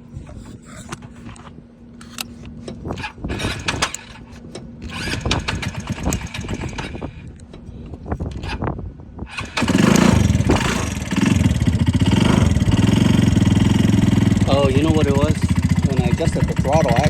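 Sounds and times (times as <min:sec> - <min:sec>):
motorcycle engine cranking on starter: 0:02.8 - 0:07.4, 0:08.3 - 0:17.0
engine sputtering with uneven firing: 0:03.0 - 0:07.0, 0:09.3 - 0:17.0.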